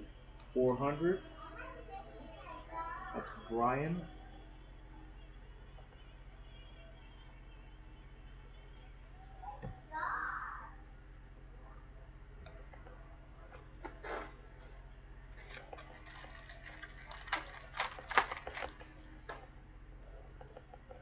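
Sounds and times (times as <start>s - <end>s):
trading cards shuffling: 15.3s - 19.0s.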